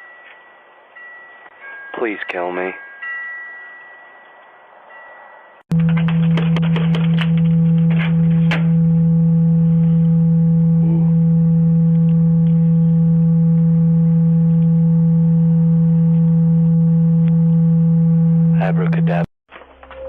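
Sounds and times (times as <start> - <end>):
low electronic drone: 5.7 - 19.3.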